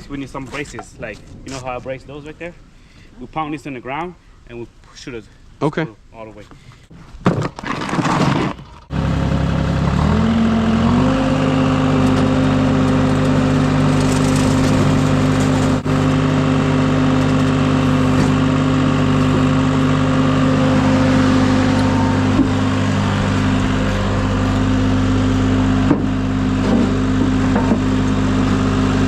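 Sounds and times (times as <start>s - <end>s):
engine starting and revving up: 8.9s - 29.0s.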